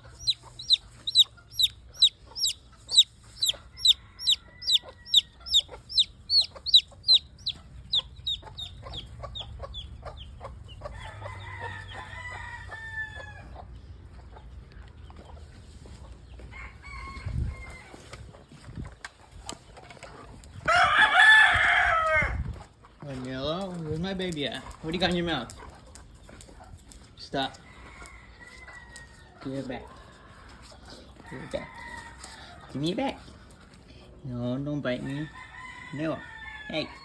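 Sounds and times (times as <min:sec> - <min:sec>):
chick peeping: 0:00.0 - 0:12.1.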